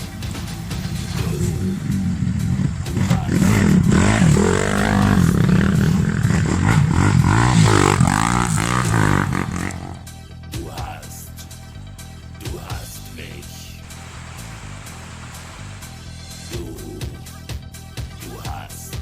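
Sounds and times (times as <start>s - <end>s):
vehicle engine revving: 0.0s - 10.2s, 13.4s - 16.2s.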